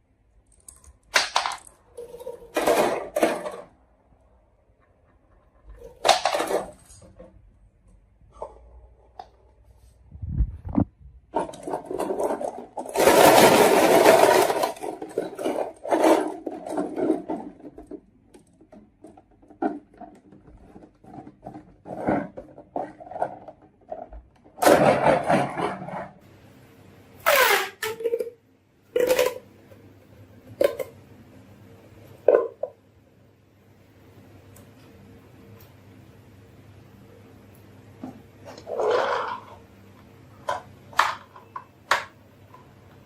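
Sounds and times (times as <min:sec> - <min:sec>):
marbles rattling down wooden track: 0:11.4 - 0:17.9.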